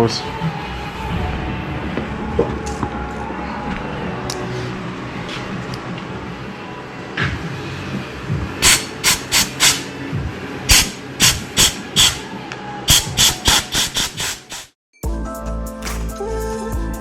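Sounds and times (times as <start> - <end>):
music: 0.0 - 13.8, 15.0 - 17.0
compressed air blow gun blasts: 8.6 - 10.0, 10.7 - 12.3, 12.9 - 14.8.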